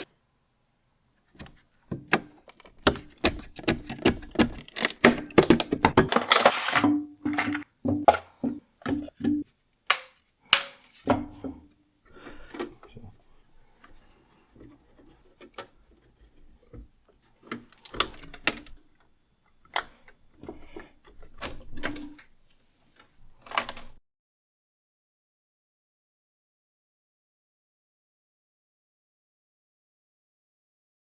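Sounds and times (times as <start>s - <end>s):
hard parts clicking and knocking: 1.4s - 11.7s, 14.6s - 19.1s.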